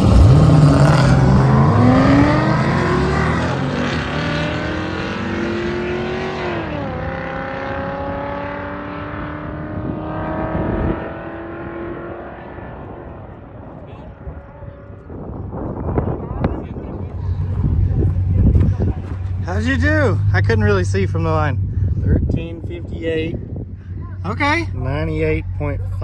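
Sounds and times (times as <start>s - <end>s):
car accelerating hard: 0.0s - 15.0s.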